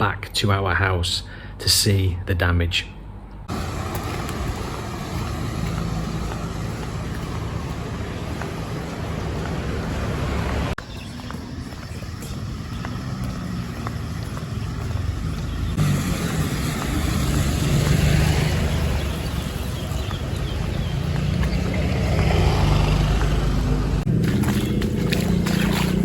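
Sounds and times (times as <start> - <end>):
motor engine running: 3.5 - 26.0
rushing noise: 14.5 - 24.1.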